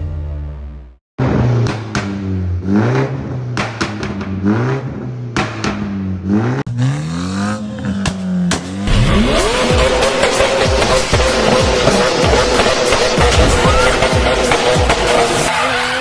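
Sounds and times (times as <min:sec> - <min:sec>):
car engine revving: 0:01.2 - 0:16.0
exhaust pops and crackles: 0:03.0 - 0:04.6.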